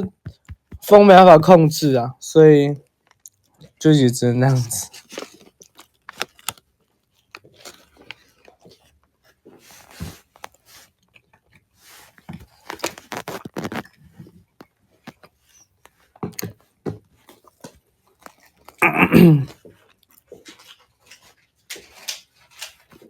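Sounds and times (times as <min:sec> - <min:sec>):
chewing and crunching food: 0:02.9 - 0:03.8, 0:04.9 - 0:18.8, 0:19.5 - 0:23.0.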